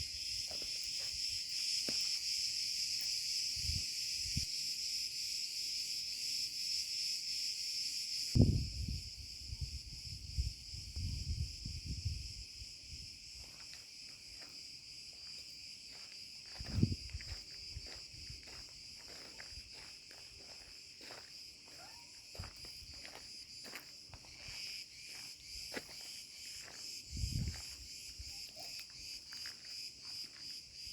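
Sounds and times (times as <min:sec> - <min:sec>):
cicadas buzzing chorus: 0:00.0 - 0:30.9
footsteps on dry ground: 0:00.4 - 0:02.2, 0:13.4 - 0:27.8, 0:28.7 - 0:30.6.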